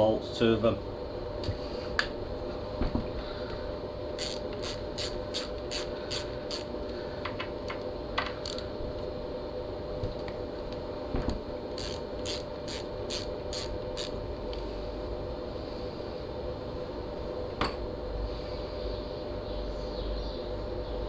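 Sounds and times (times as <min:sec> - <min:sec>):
steady low hum: 0:00.0 - 0:21.0
socket ratchet clicking: 0:04.2 - 0:06.7, 0:11.8 - 0:14.2.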